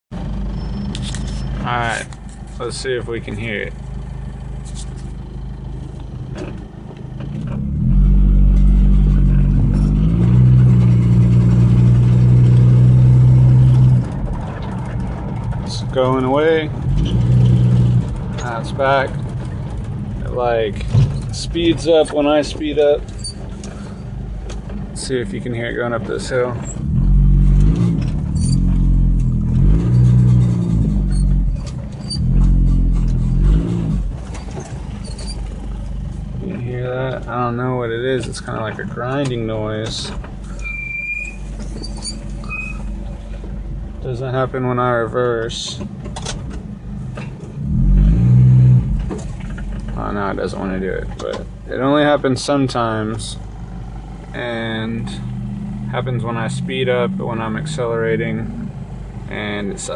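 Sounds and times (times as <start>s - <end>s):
loud low engine drone: 7.3s - 14.4s, 15.6s - 34.3s, 46.8s - 51.8s, 52.9s - 59.9s
faint high-pitched squeaks: 23.1s - 24.0s, 34.3s - 35.5s, 40.5s - 43.0s.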